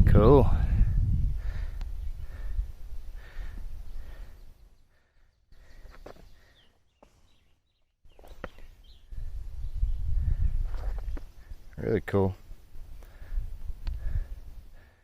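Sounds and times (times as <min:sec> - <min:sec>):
wind rumble on microphone: 0:00.0 - 0:04.4, 0:08.8 - 0:11.7, 0:12.5 - 0:14.9
faint bird chirps: 0:03.8 - 0:11.3.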